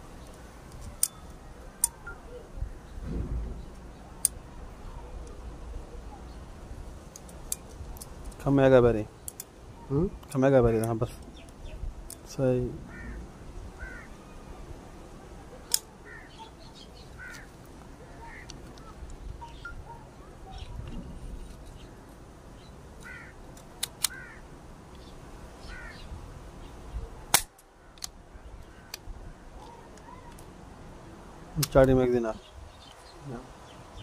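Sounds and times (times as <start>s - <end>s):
birds chirping: 0.0s - 34.0s
pistol parts clicking: 0.7s - 2.0s, 23.5s - 24.2s, 27.3s - 28.2s.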